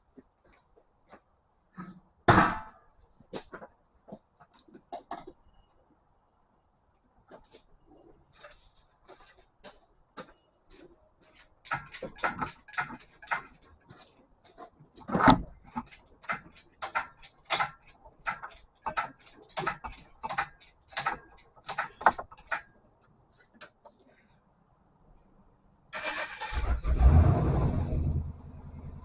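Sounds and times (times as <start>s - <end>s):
metal tools clicking and knocking: 11.4s - 22.8s.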